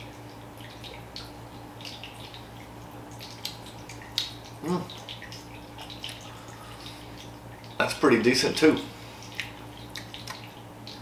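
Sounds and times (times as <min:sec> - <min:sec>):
faint electrical hum: 0:00.0 - 0:11.0
person humming low mm: 0:04.6 - 0:05.0.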